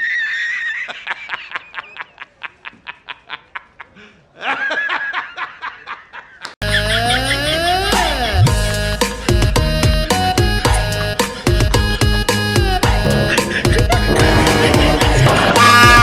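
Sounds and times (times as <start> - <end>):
music: 6.6 - 16.0
high-pitched giggling: 13.1 - 15.7.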